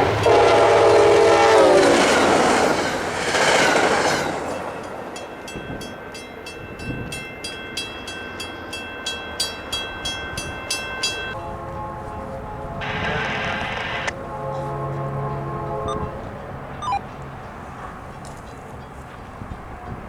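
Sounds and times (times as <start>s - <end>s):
railroad crossing bell ringing: 0.0s - 1.2s, 4.2s - 11.4s, 15.3s - 17.8s
train rumbling past: 0.0s - 7.2s, 7.9s - 20.0s.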